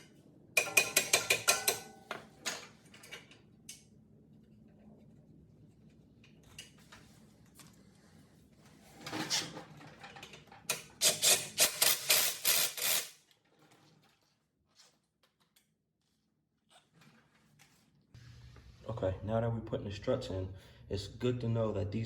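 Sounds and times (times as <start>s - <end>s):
tools scraping and clanking on metal: 8.7s - 11.5s.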